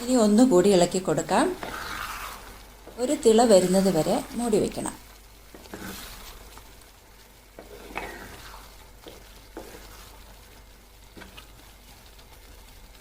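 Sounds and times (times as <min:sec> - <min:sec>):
faint sizzle: 0:00.0 - 0:13.0
utensil scraping pan: 0:00.9 - 0:04.3, 0:05.5 - 0:06.7, 0:07.6 - 0:10.3.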